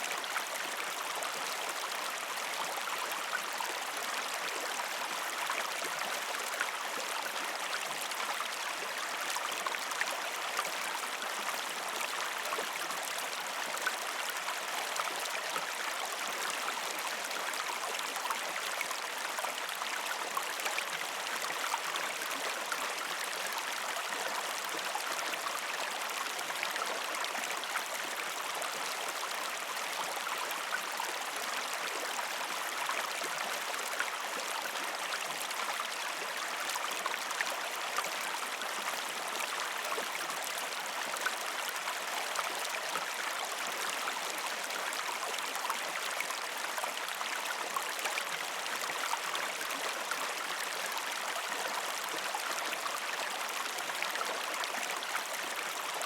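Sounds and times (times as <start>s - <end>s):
stream water flowing over rocks: 0.0s - 56.0s.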